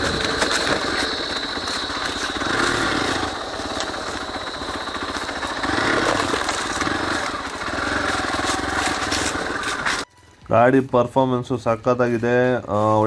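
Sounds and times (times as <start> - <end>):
motorcycle engine running: 0.0 - 10.1.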